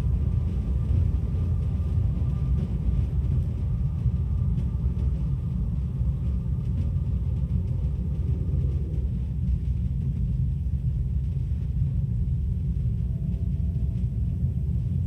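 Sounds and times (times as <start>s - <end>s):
low rumble: 0.0s - 15.0s.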